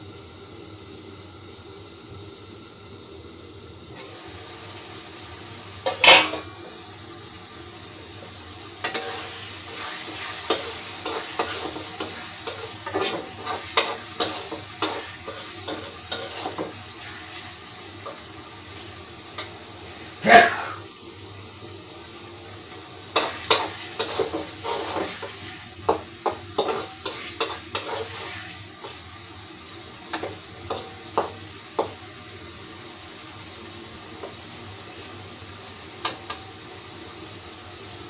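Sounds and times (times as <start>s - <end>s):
spice paste sizzling in oil: 0.0s - 38.0s
spatula scraping a pan: 5.8s - 6.5s, 8.2s - 20.5s, 23.1s - 29.2s, 30.0s - 32.0s.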